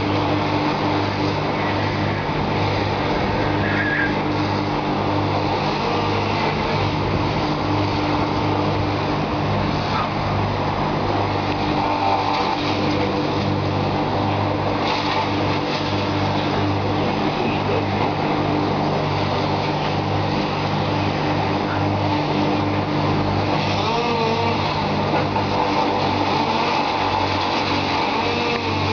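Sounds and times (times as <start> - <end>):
engine running steadily: 0.0 - 28.9.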